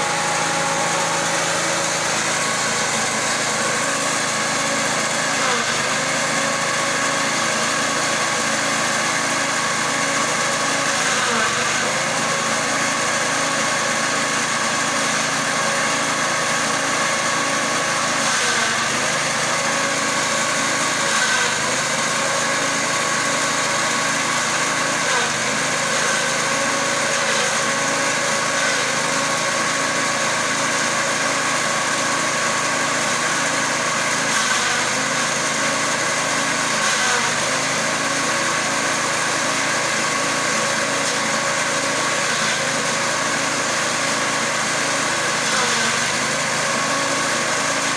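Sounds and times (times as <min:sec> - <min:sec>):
grass chopper engine running: 0:00.0 - 0:47.9.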